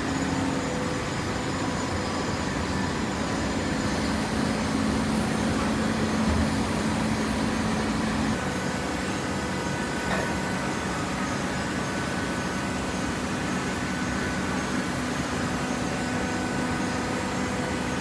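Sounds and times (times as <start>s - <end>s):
baler machine hum: 2.2s - 11.4s.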